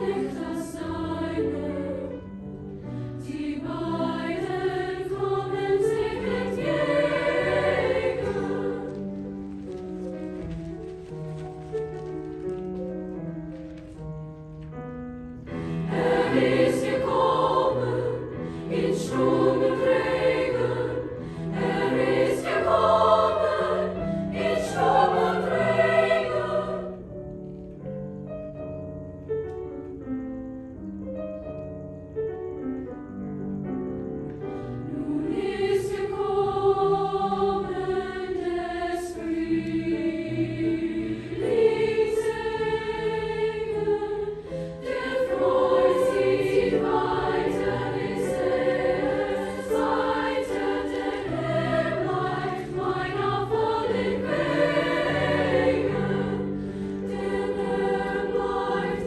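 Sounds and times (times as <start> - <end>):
choir singing: 0.0 - 10.6, 15.4 - 27.3, 34.6 - 59.0
piano accompaniment: 0.0 - 59.0.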